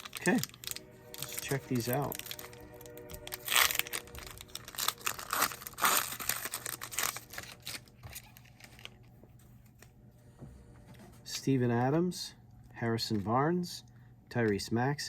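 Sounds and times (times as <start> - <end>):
wrapper tearing and crinkling: 0.0 - 9.0
cards rustling: 0.0 - 9.9.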